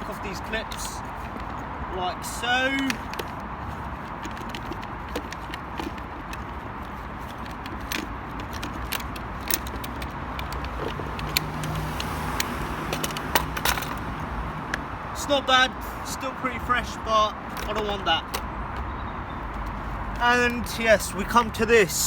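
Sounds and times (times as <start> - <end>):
light metallic rattles: 2.3 - 14.9
spring clips clicking: 7.4 - 14.8.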